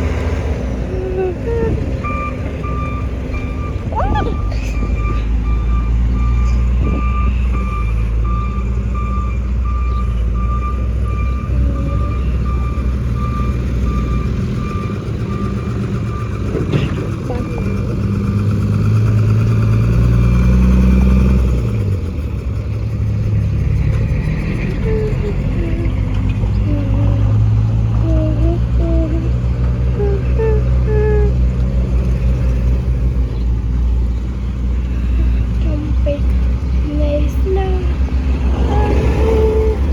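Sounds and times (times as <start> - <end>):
diesel engine rumble: 0.0 - 39.9
reversing alarm beeping: 1.6 - 18.0.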